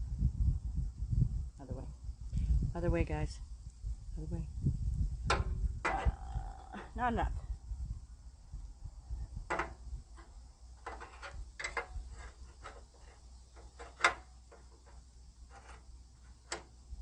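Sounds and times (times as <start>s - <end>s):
low steady rumble: 0.0s - 10.8s.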